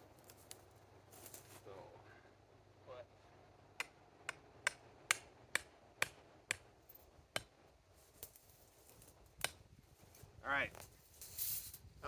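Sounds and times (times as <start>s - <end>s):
hammer knocking a stake: 3.8s - 6.7s.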